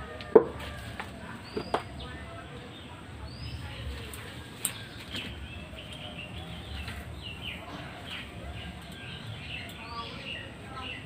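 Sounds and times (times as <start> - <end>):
small birds chirping: 1.0 - 11.0.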